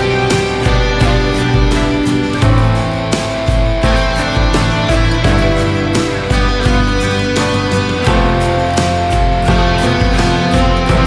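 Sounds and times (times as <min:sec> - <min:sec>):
background music with guitar: 0:00.0 - 0:11.0.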